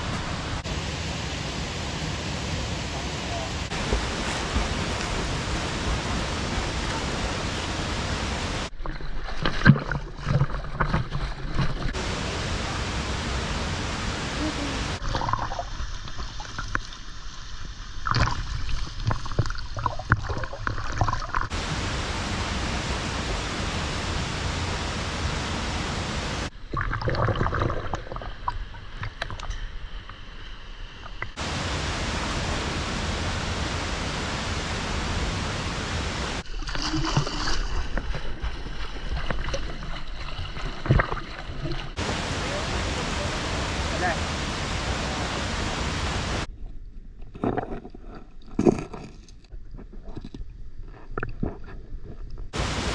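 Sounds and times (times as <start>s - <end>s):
waterfall roaring: 0.0s - 8.7s, 12.0s - 15.0s, 21.5s - 26.5s, 31.4s - 36.4s, 42.0s - 46.5s, 52.6s - 52.9s.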